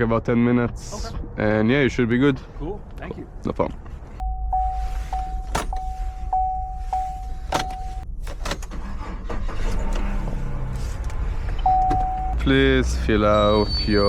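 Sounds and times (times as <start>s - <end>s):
low car rumble: 0.0s - 14.0s
steady electronic beep: 4.2s - 8.0s, 11.6s - 12.4s.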